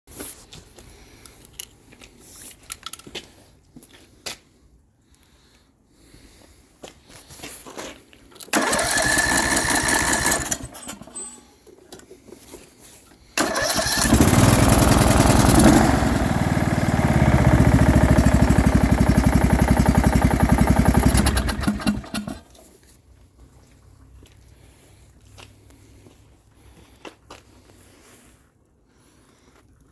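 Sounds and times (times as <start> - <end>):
mower engine cranking and running: 8.4 - 11.6, 13.4 - 22.8.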